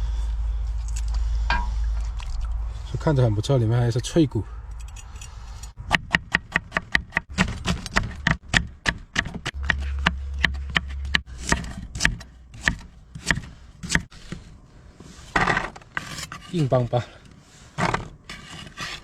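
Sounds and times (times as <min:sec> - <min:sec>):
knife chopping through ribs: 0:06.0 - 0:14.1.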